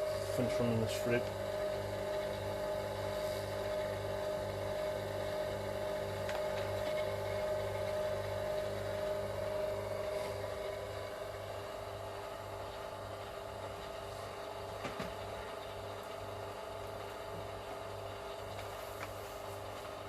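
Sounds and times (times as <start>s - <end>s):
wire stripper motor humming: 0.0s - 20.0s.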